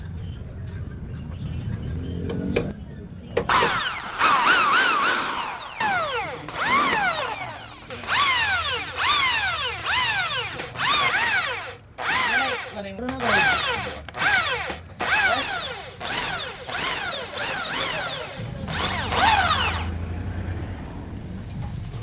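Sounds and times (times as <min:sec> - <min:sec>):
power drill in short pulses: 0:03.5 - 0:19.9.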